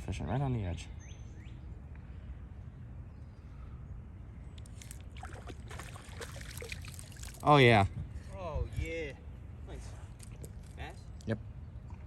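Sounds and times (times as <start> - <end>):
wind rumble on microphone: 7.4 - 9.1.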